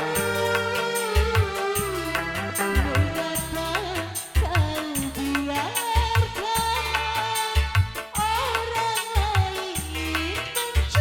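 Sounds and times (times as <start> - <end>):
held melody note: 0.0 - 4.1
steady drum beat: 0.0 - 11.0.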